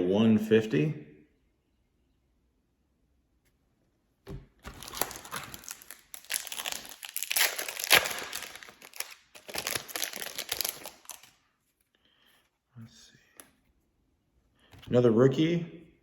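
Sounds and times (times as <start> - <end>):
foil wrapper crinkling: 4.6 - 11.5.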